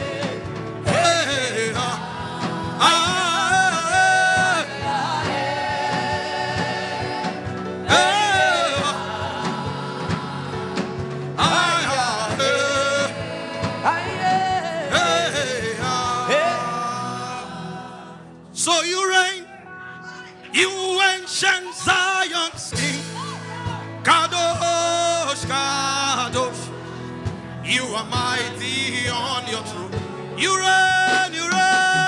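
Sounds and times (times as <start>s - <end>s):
instrumental backing: 0.0s - 32.0s
person singing gospel: 0.0s - 32.0s.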